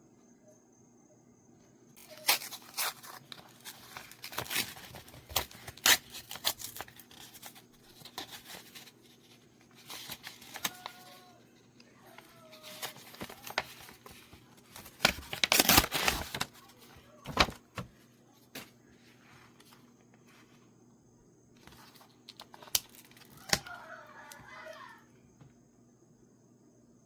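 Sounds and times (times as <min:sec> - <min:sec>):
packaging ripping open: 0:02.0 - 0:08.9, 0:09.7 - 0:11.3, 0:12.1 - 0:17.9, 0:21.6 - 0:23.8
taps and crinkles: 0:12.1 - 0:18.0.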